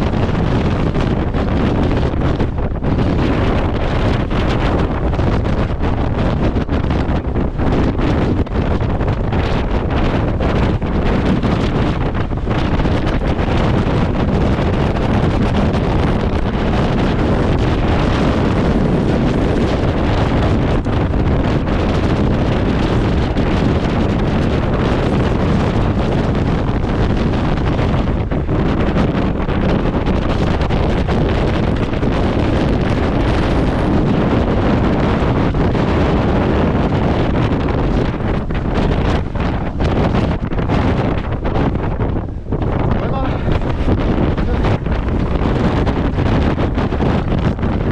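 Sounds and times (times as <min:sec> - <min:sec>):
strong wind on microphone: 0:00.0 - 0:47.9.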